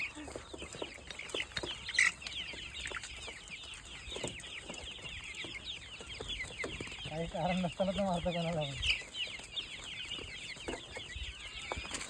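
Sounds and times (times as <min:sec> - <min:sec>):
chickens peeping: 0:00.0 - 0:12.0.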